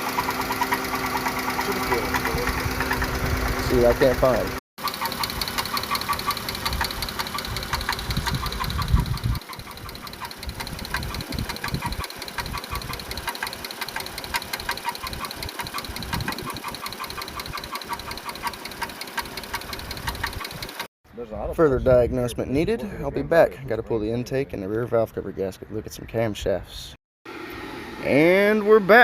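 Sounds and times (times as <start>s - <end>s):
engine rumble: 0.0s - 20.9s
engine valve ticking: 0.0s - 20.9s.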